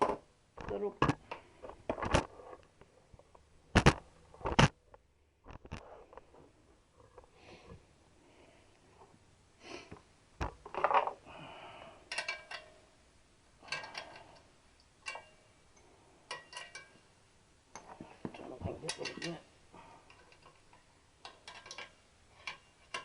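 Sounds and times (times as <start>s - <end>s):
metal tools clinking: 12.1s - 12.8s, 15.0s - 15.5s, 16.3s - 17.0s, 17.7s - 19.5s, 20.1s - 23.0s.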